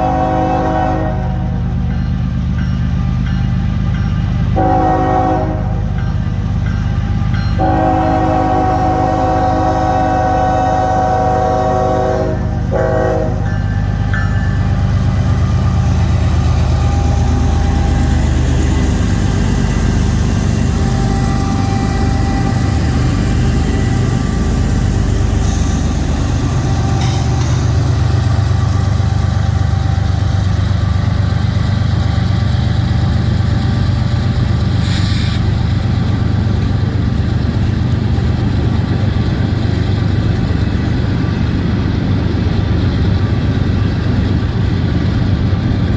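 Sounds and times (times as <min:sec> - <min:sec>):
train horn chord: 0:00.0 - 0:01.6, 0:04.6 - 0:05.8, 0:07.3 - 0:30.0
wheel and rail noise: 0:05.9 - 0:45.9.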